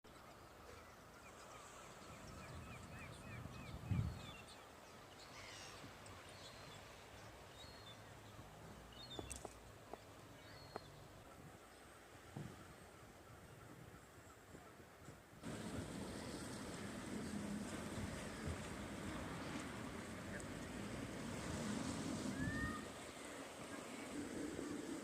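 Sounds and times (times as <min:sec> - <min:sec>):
birds chirping: 0:00.1 - 0:12.0
wind and surf: 0:00.1 - 0:25.0.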